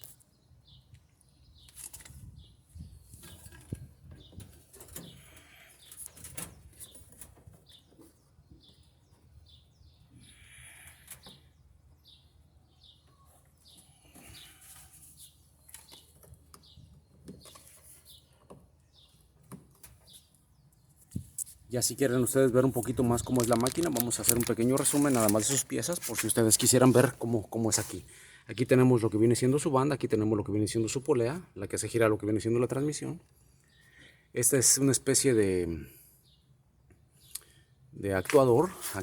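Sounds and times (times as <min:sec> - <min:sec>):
small birds chirping: 0:00.0 - 0:39.0.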